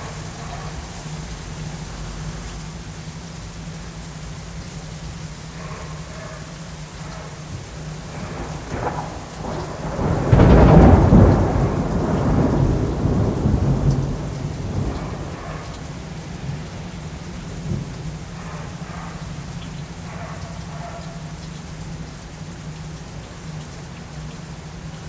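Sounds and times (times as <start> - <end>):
steady rain: 0.0 - 25.0
thunder crack and rumble: 7.1 - 20.8.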